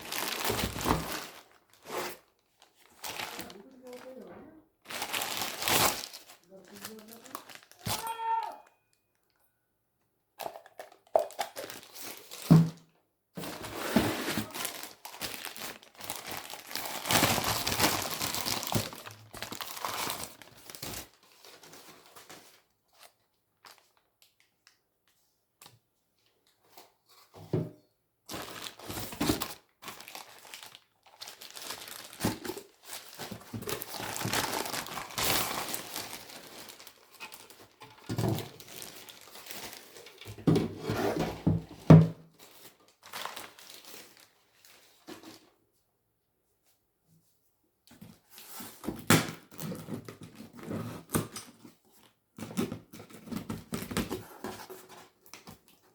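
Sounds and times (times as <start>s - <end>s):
packaging crinkling: 0.0s - 4.2s, 4.8s - 8.2s, 10.8s - 12.6s, 13.4s - 24.4s, 28.3s - 40.3s, 42.4s - 45.3s.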